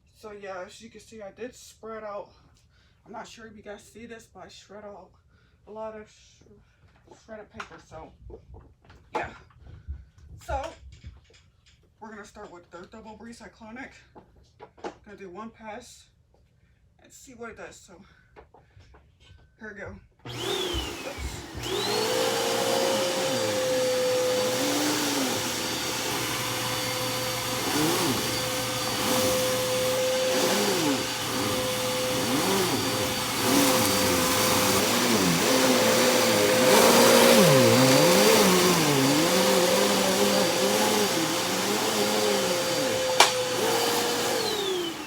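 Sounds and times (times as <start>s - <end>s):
vacuum cleaner motor whine: 20.3s - 45.0s.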